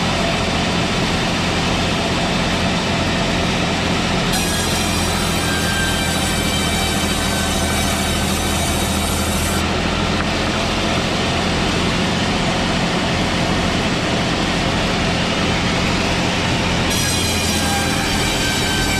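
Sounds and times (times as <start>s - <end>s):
sawmill machine running: 0.0s - 18.9s.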